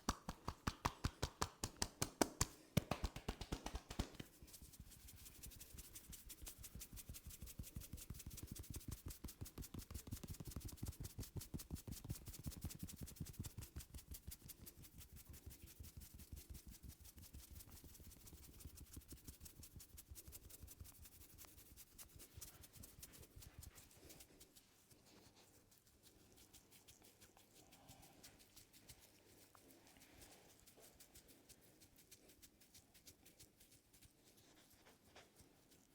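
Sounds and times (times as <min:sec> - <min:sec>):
hands tapping on a head: 0:00.0 - 0:04.4, 0:08.0 - 0:14.1.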